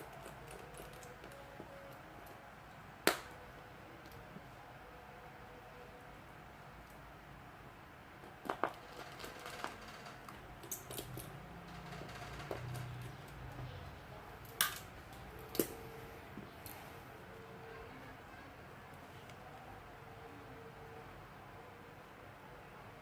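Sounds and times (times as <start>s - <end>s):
hand tools clicking on phone parts: 0.0s - 2.4s, 8.2s - 11.4s, 14.4s - 15.8s.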